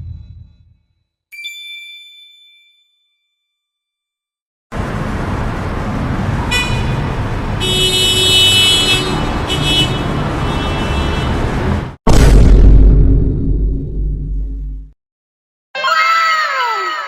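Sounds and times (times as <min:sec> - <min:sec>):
passing cars rumbling: 0:04.7 - 0:12.0
car horns honking: 0:06.4 - 0:11.6.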